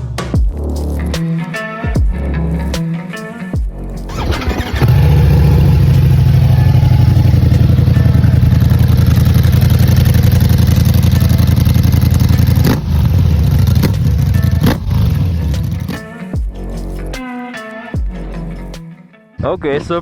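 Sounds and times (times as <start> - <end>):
motorcycle engine running hard: 4.1 - 16.0.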